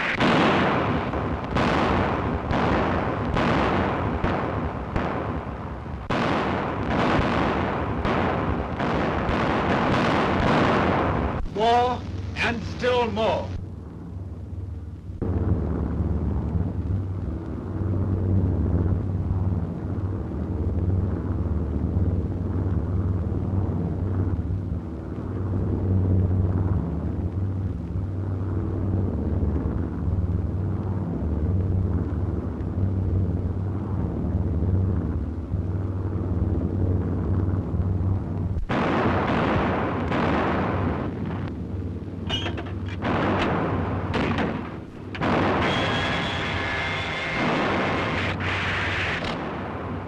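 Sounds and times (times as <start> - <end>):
aircraft engines droning: 11.0 - 50.0.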